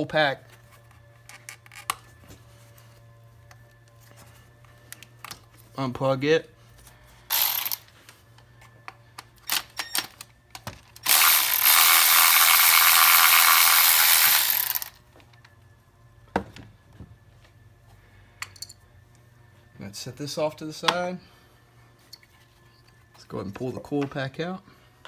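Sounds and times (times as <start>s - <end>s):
power ratchet running: 7.3s - 7.9s, 11.0s - 15.0s
tool rattling and clicking: 7.3s - 7.9s, 9.4s - 14.9s.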